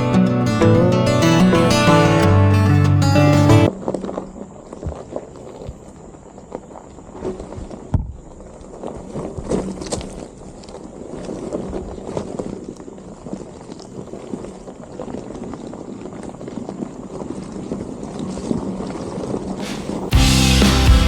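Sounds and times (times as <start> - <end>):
loud music: 0.0 - 3.7, 19.7 - 21.0.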